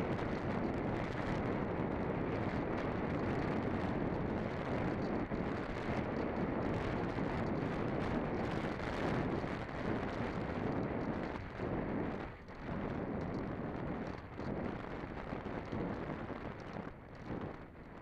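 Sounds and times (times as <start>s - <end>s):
wind rushing over microphone: 0.0s - 18.0s.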